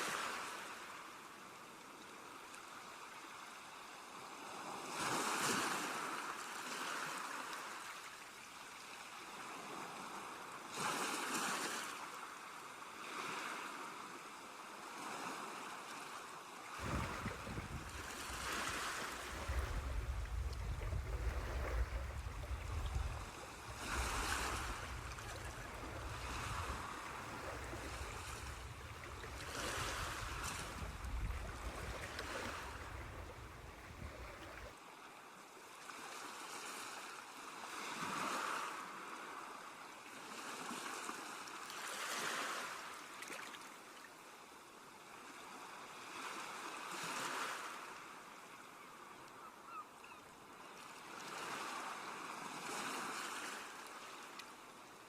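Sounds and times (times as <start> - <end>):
ocean waves washing on shore: 16.7 - 34.8
steady low rumble: 19.2 - 34.3.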